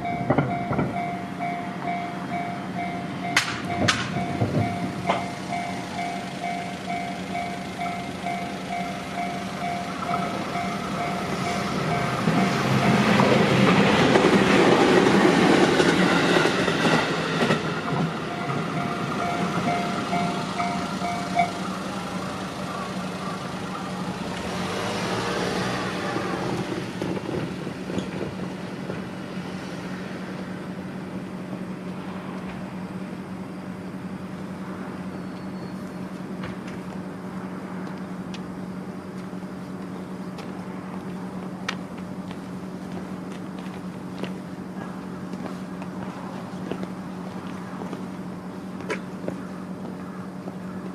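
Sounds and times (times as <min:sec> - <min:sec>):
level crossing warning bell: 0:00.0 - 0:14.1, 0:17.3 - 0:24.3
electric train passing: 0:00.0 - 0:50.9.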